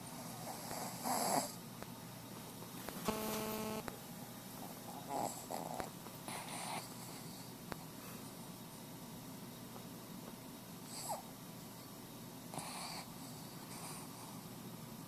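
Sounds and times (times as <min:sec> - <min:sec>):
dog snoring: 0:00.0 - 0:01.6, 0:04.9 - 0:07.5, 0:10.9 - 0:11.3, 0:12.5 - 0:14.4.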